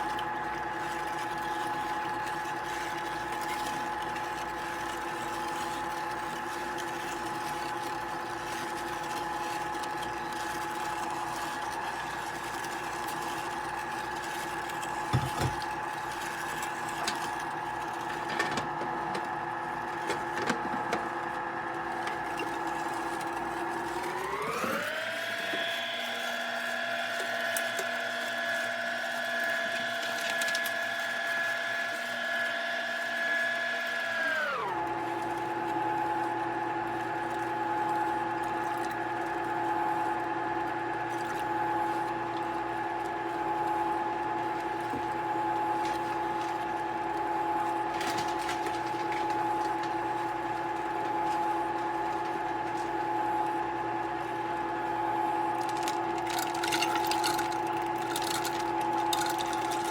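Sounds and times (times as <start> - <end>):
ice cream maker whine and hum: 0.0 - 59.9.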